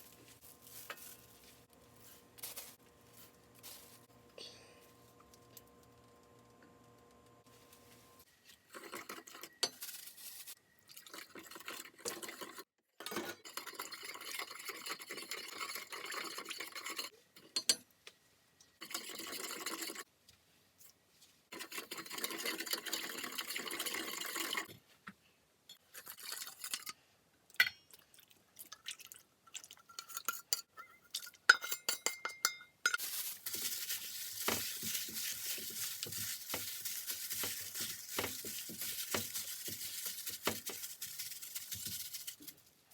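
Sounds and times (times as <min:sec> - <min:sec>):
utensils clinking against dishes: 0:30.0 - 0:39.4.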